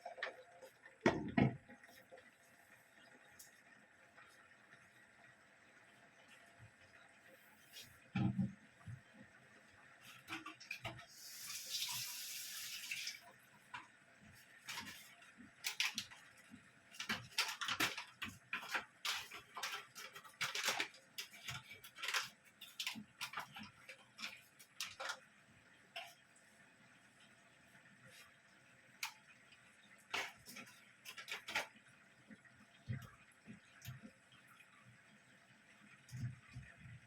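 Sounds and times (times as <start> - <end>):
water running from a tap: 10.6 - 13.4.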